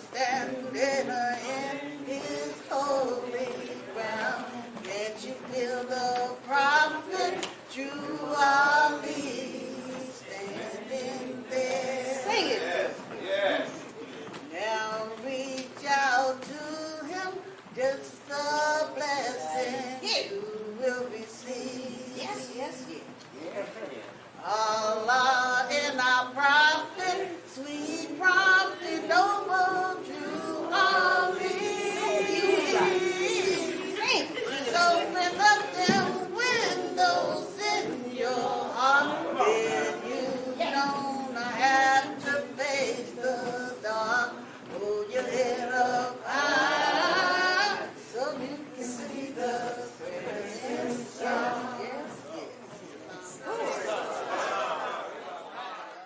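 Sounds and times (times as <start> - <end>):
voices singing: 0.0 - 23.2, 24.2 - 56.0.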